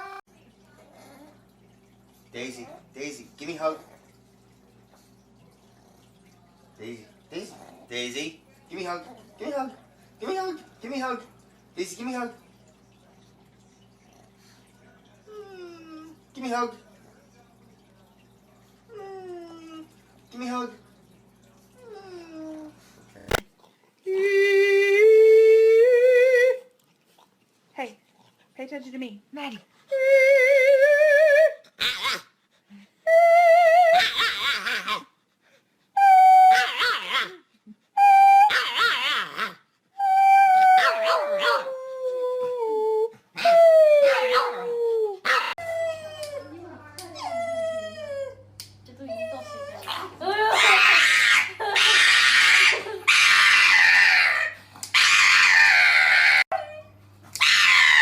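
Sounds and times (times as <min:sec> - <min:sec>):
dog howling: 0:33.1 - 0:35.0, 0:36.0 - 0:37.4, 0:38.0 - 0:46.6, 0:49.1 - 0:58.0
dog yelp: 0:36.5 - 0:37.4, 0:38.4 - 0:39.6, 0:40.8 - 0:41.7, 0:44.0 - 0:44.6, 0:45.2 - 0:45.6, 0:49.8 - 0:56.7, 0:57.4 - 0:58.0.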